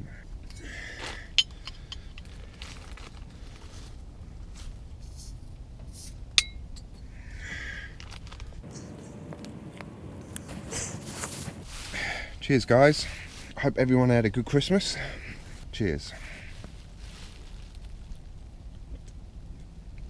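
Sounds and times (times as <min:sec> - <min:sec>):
low steady rumble: 0:08.6 - 0:11.6
soft rustles and taps: 0:08.6 - 0:11.6.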